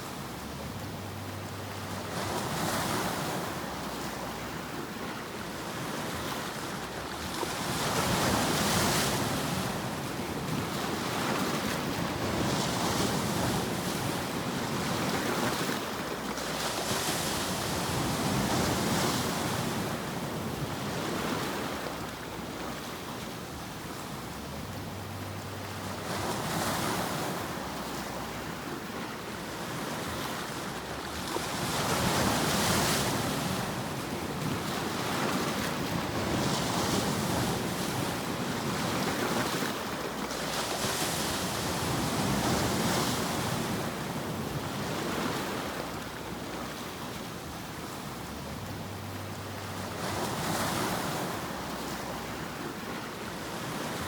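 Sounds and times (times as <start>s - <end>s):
rushing noise like surf: 0.0s - 7.1s.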